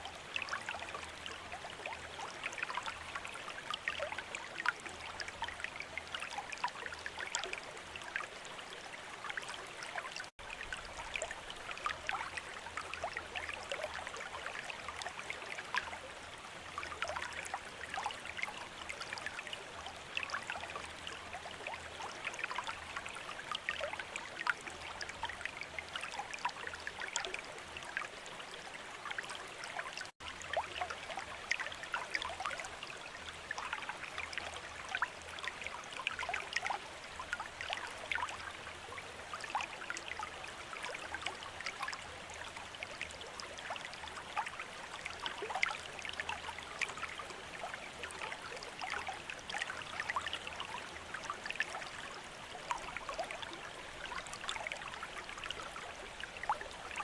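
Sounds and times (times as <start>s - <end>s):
fountain water trickling and splashing: 0.0s - 57.0s.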